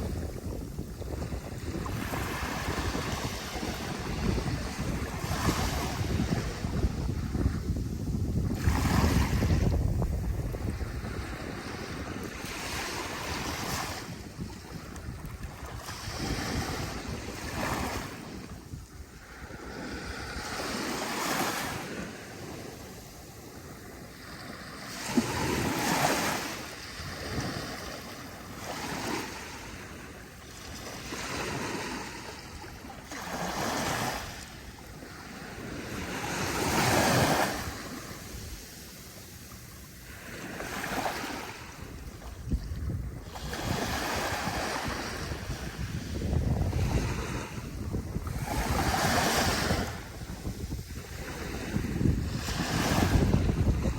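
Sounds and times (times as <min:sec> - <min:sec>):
ocean waves breaking on beach: 0:00.0 - 0:53.9.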